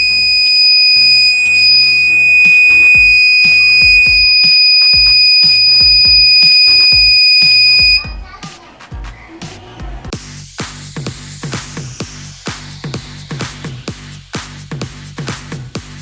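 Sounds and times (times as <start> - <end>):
high-pitched alarm buzzer tone: 0.0 - 8.2
background music with steady beat: 1.5 - 16.0.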